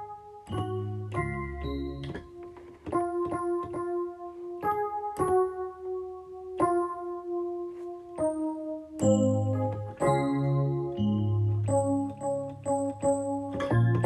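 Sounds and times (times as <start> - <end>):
keyboard playing slow piano chords: 0.0 - 14.0.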